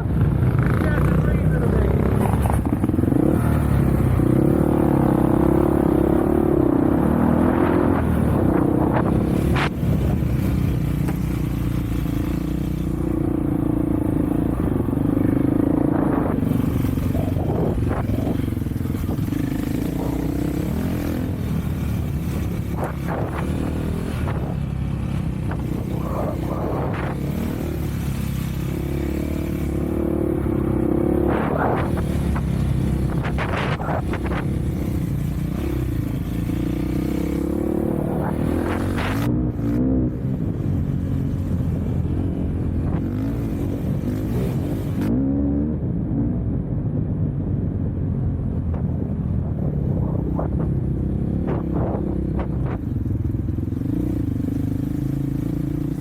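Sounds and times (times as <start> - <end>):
off-road vehicle engine running: 0.0 - 45.2, 46.0 - 56.0
knocks and clatter over rough ground: 9.0 - 13.0.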